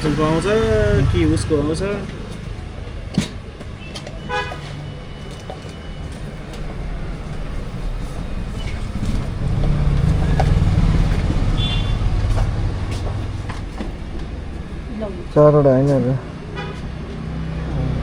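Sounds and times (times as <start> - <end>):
vehicle passing by: 0.0 - 2.4, 7.0 - 18.0.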